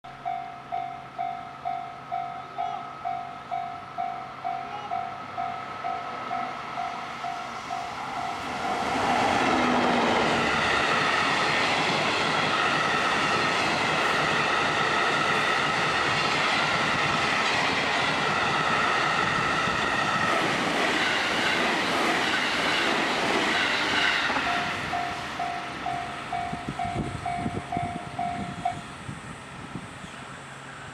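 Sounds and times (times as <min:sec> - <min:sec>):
level-crossing warning bell: 0:00.1 - 0:08.8, 0:21.1 - 0:29.0
train passing over crossing: 0:00.1 - 0:30.9.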